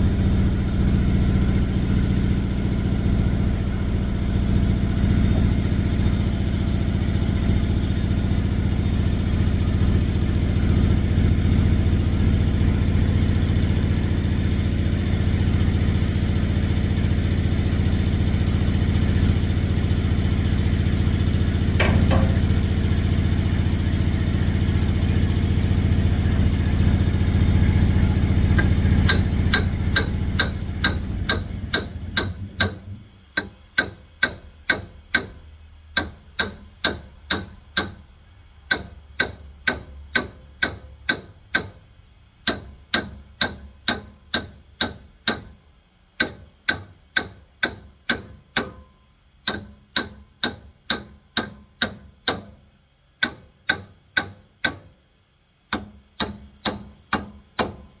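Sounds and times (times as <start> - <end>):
sawmill engine running: 0.0 - 33.4
metal knocks: 21.8 - 23.1.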